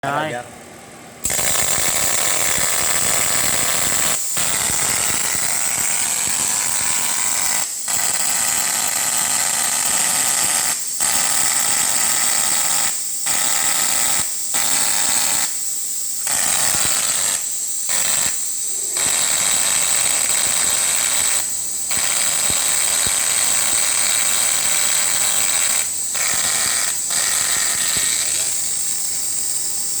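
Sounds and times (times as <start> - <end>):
plasma cutter torch hissing: 1.2 - 30.0.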